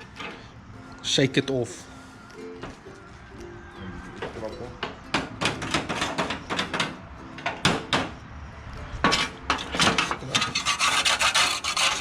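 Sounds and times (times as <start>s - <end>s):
metallic knocks and rattles of oven: 4.8s - 8.1s, 9.0s - 10.7s.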